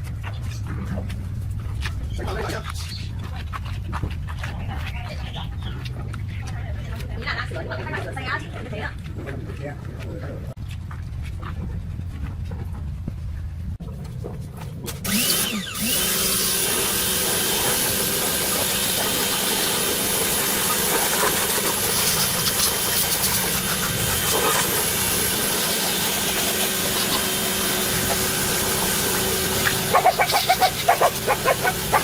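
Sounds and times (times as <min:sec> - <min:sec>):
motor starting and running: 0:14.9 - 0:32.0.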